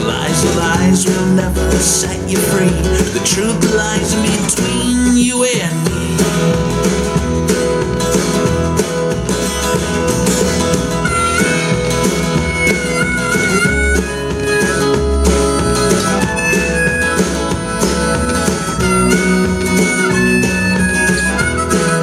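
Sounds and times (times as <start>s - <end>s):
guitar accompaniment with beat: 0.0s - 22.0s
wavering lead melody: 6.4s - 22.0s.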